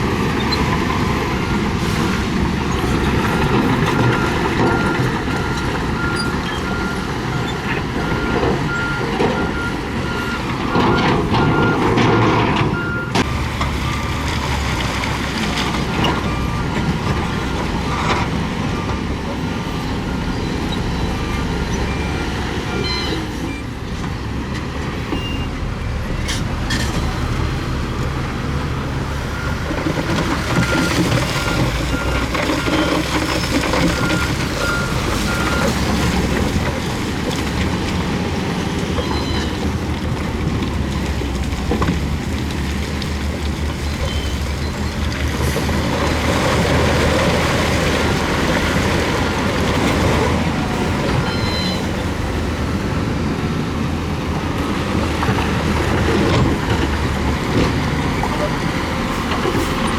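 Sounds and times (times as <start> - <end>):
heavy diesel machinery running: 0.0 - 59.9
reverse alarm beeping: 20.1 - 23.7, 50.8 - 51.9.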